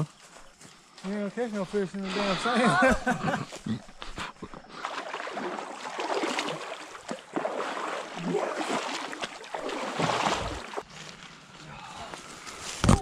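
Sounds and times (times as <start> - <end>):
water sloshing from wading: 3.8 - 10.9.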